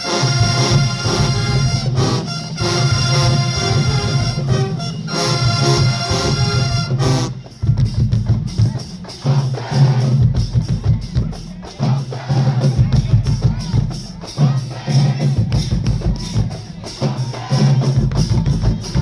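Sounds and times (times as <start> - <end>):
brass band chords: 0.0 - 10.4.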